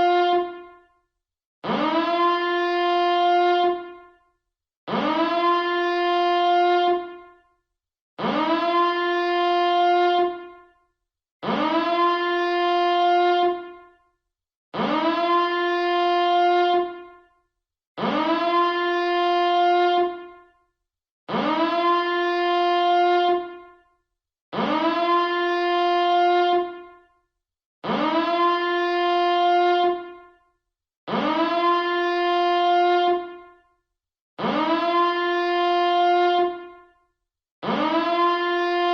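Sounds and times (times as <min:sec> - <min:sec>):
alarm siren blasts: 0:00.0 - 0:00.9, 0:01.6 - 0:04.3, 0:04.9 - 0:07.5, 0:08.2 - 0:10.8, 0:11.4 - 0:14.0, 0:14.8 - 0:17.4, 0:18.0 - 0:20.6, 0:21.3 - 0:23.9, 0:24.5 - 0:27.1, 0:27.8 - 0:30.5, 0:31.1 - 0:33.7, 0:34.4 - 0:37.0, 0:37.6 - 0:38.9.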